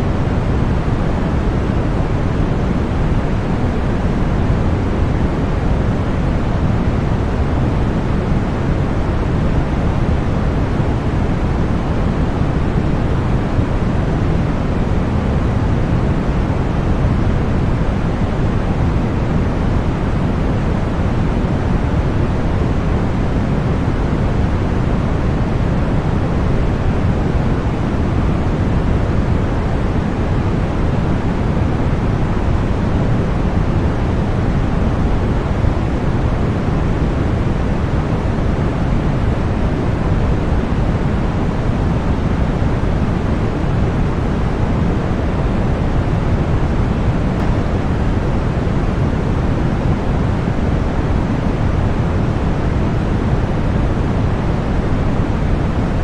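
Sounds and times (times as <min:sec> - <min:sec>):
steady white noise hiss: 0:00.0 - 0:56.0.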